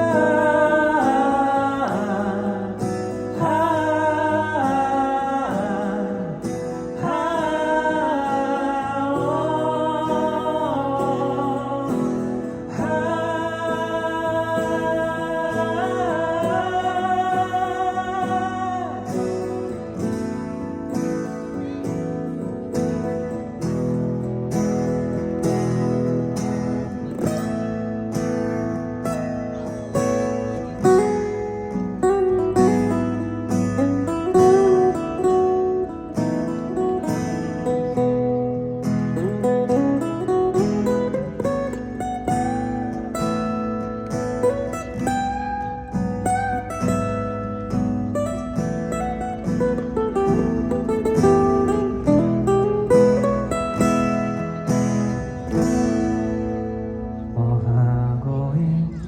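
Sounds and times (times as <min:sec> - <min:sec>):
person singing wordless notes: 0:00.0 - 0:19.7
acoustic guitar strumming: 0:00.0 - 0:59.0.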